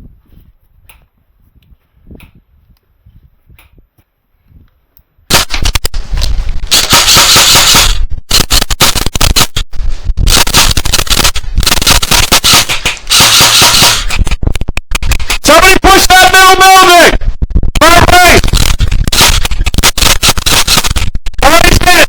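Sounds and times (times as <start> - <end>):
airsoft gun firing bursts: 5.3 - 6.0, 6.6 - 9.6, 10.2 - 14.3, 17.8 - 22.0.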